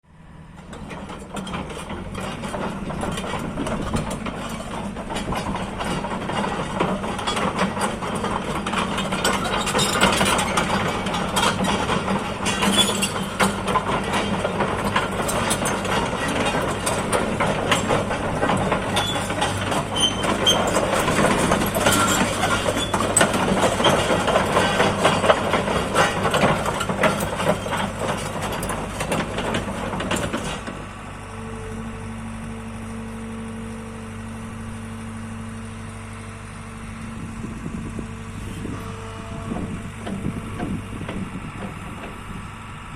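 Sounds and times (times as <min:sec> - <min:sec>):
excavator diesel engine running: 0:00.1 - 0:42.9.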